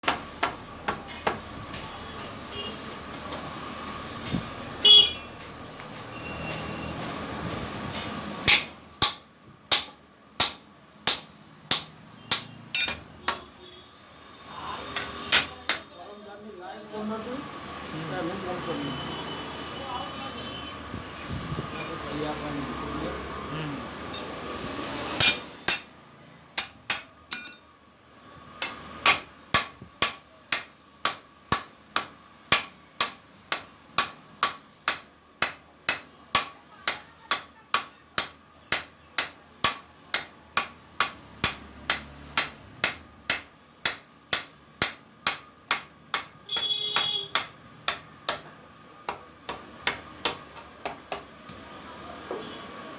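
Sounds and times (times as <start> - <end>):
hammer striking metal: 8.4 - 13.4, 25.2 - 26.0, 26.6 - 27.7, 28.6 - 48.5
metallic ringing: 27.3 - 27.7.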